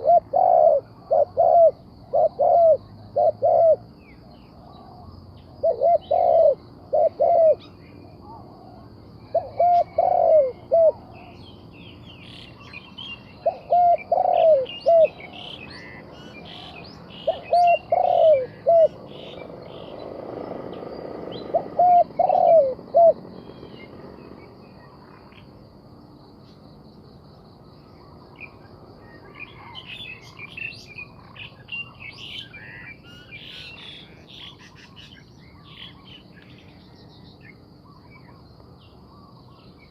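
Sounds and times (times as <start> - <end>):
dove cooing: 0.0 - 3.9, 4.5 - 11.5, 12.3 - 25.1
small birds chirping: 0.0 - 39.9.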